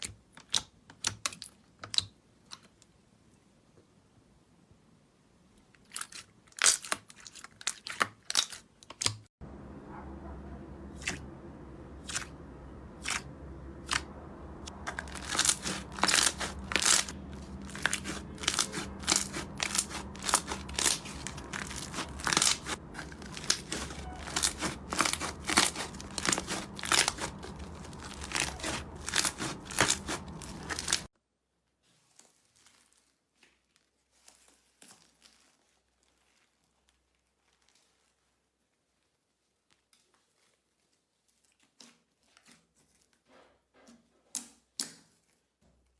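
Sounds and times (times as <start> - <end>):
low hum: 9.4 - 31.1
faint handling sounds: 13.9 - 44.1.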